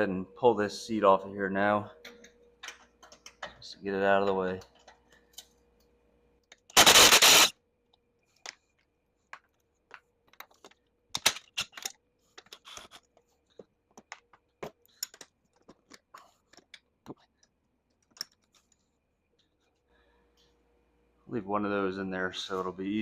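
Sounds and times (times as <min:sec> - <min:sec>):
power drill burst: 0:06.8 - 0:07.5.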